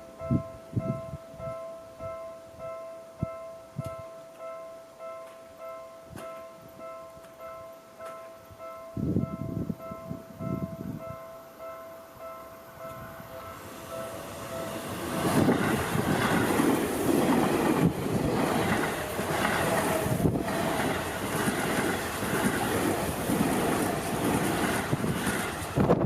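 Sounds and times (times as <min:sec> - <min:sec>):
train rushing past: 0:12.8 - 0:26.0
train wheels clacking: 0:12.8 - 0:26.0.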